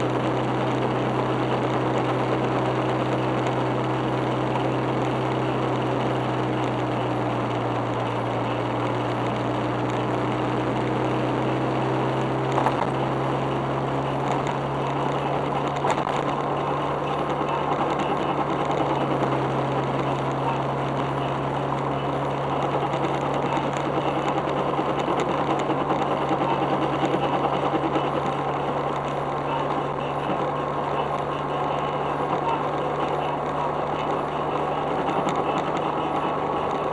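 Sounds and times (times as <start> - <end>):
car engine low drone: 0.0 - 36.9
car road noise: 0.0 - 36.9
wheel hub grinding: 12.2 - 36.9.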